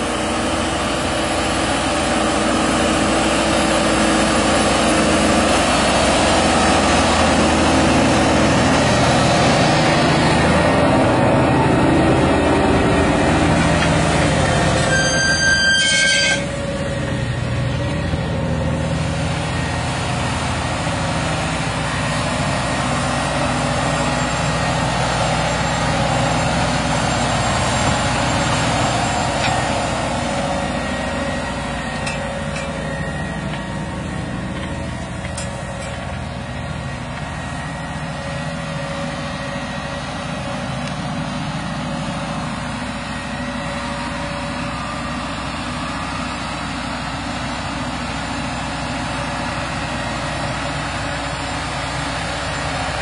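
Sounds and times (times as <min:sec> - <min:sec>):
tractor diesel engine running: 0:00.0 - 0:53.0.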